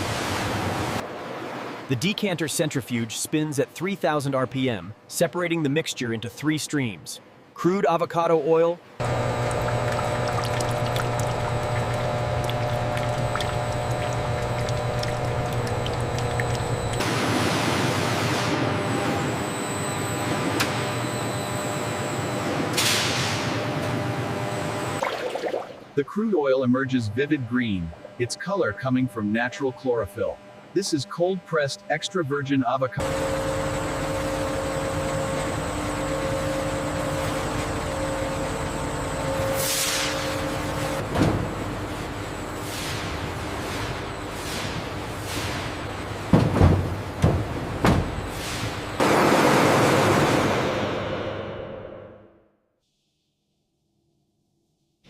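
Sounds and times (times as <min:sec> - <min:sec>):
centrifuge machine hum: 0:09.0 - 0:22.8, 0:27.0 - 0:52.1.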